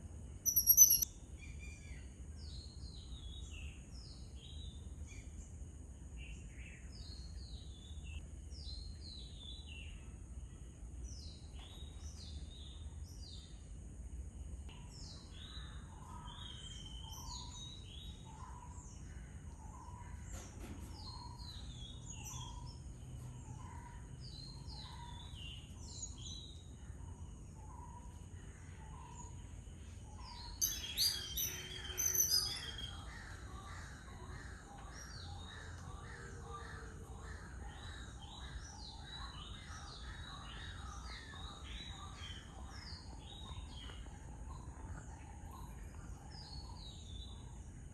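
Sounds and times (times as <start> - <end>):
birds chirping: 0.0 - 1.1, 14.9 - 47.5.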